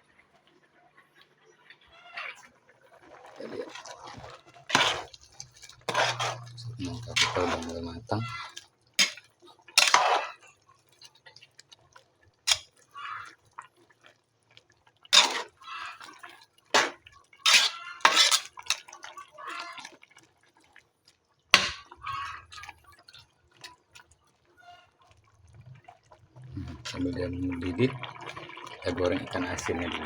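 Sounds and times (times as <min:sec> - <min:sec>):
metal utensil clinking on pot: 0:04.7 - 0:10.4, 0:12.5 - 0:12.8, 0:15.2 - 0:15.6, 0:16.8 - 0:18.9, 0:21.6 - 0:22.7.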